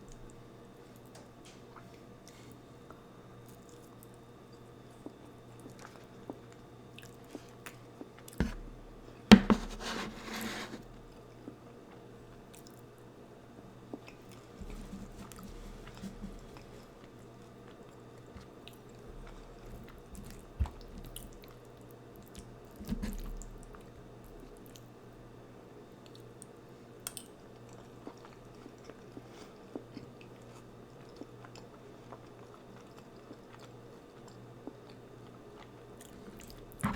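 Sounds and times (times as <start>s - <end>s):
chewing and wet mouth sounds: 3.4s - 8.4s, 26.0s - 36.9s.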